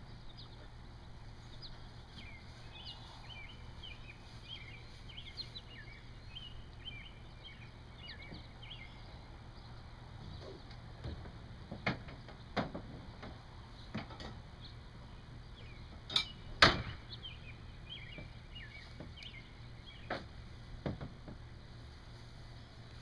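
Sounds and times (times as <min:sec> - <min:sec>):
knocks and thumps: 0:10.2 - 0:14.4, 0:20.1 - 0:21.4.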